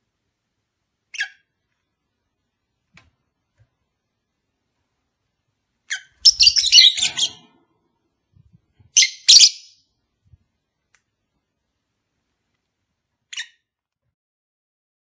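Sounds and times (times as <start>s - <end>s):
lovebirds chirping: 5.9s - 7.5s, 8.9s - 9.8s.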